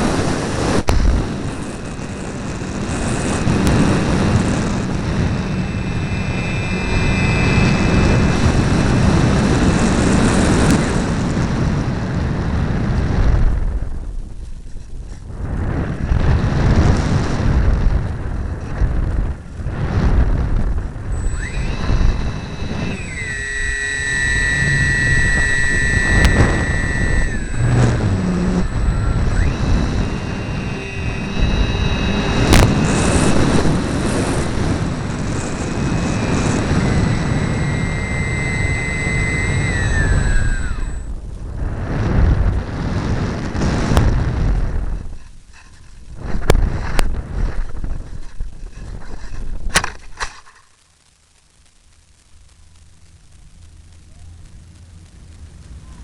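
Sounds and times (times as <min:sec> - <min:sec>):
model airplane motor whine: 0:00.0 - 0:13.1, 0:15.9 - 0:42.6
wind rushing over camera: 0:00.0 - 0:56.0.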